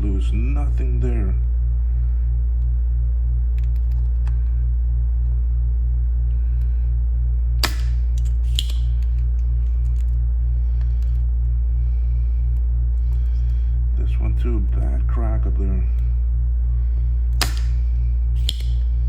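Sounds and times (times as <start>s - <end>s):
low throbbing hum: 0.0s - 19.0s
sharp clicks: 18.4s - 18.8s.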